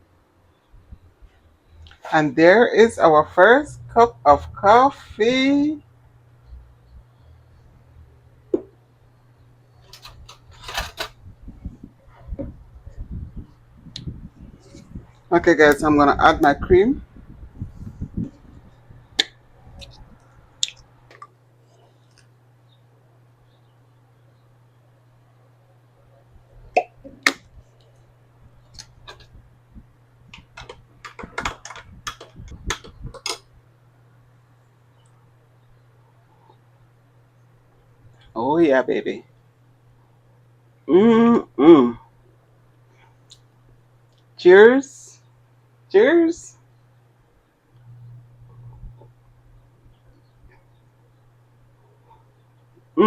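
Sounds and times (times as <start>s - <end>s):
low hum: 0.0s - 31.1s, 45.1s - 53.0s
cup knocking on counter: 8.5s - 8.7s.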